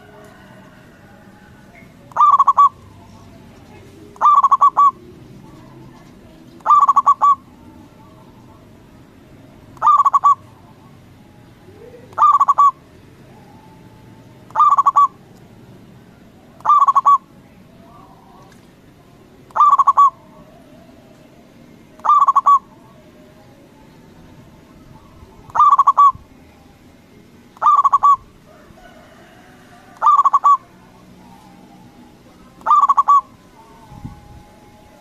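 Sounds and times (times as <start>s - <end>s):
dove cooing: 0.0s - 2.8s, 3.6s - 8.6s, 9.8s - 15.4s, 16.2s - 18.4s, 19.4s - 23.3s, 24.5s - 26.3s, 27.6s - 33.6s.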